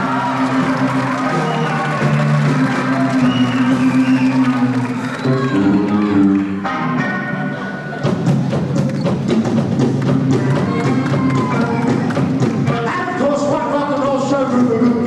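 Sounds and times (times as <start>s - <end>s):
steady drum beat: 0.0s - 5.2s, 8.0s - 13.6s
live rock band playing: 0.0s - 13.5s.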